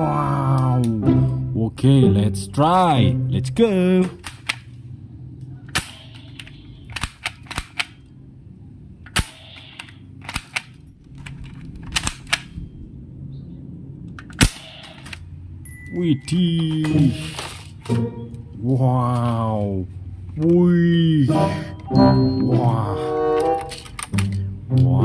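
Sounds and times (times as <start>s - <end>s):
toy gun cap shots: 5.7s - 8.0s, 9.1s - 10.8s, 14.2s - 15.2s, 23.5s - 24.4s.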